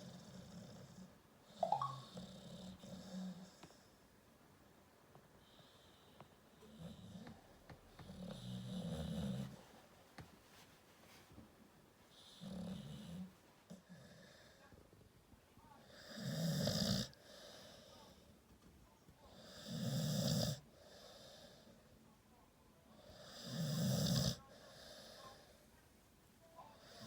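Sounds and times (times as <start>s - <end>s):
quiet breathing: 0.0s - 4.3s, 5.1s - 16.4s, 17.0s - 20.0s, 20.6s - 27.0s
dog snoring: 2.0s - 3.6s, 6.6s - 9.6s, 12.1s - 13.3s, 16.0s - 17.2s, 19.4s - 21.4s, 23.1s - 24.4s.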